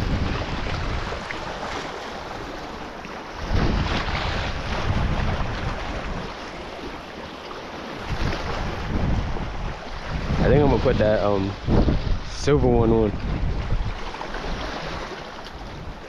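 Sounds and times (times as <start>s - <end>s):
wind buffeting microphone: 0.0s - 6.8s, 7.9s - 16.0s
surf washing: 0.0s - 16.0s.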